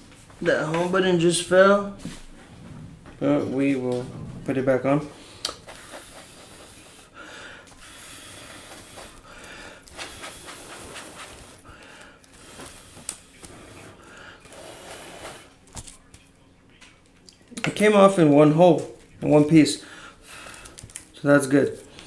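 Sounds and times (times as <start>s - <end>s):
hands scraping and rustling: 0.0s - 16.2s.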